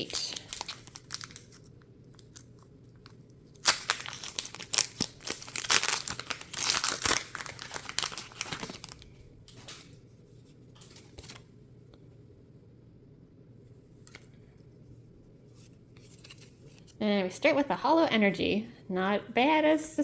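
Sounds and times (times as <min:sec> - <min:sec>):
foil wrapper tearing and crinkling: 0:00.0 - 0:09.1.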